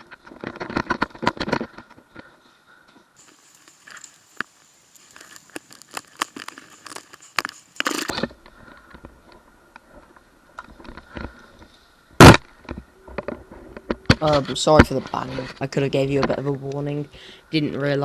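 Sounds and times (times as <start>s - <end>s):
clicks and rustling: 3.2s - 8.1s.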